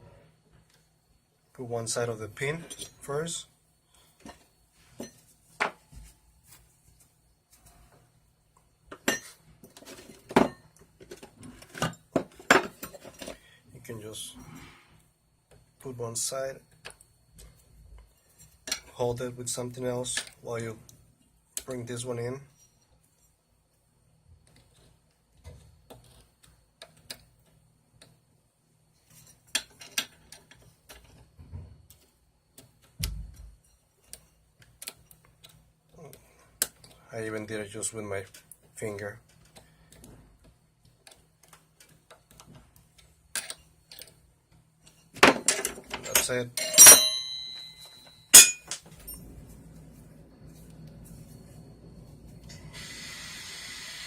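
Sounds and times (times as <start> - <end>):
metal clicks and clinks: 44.8 - 49.2.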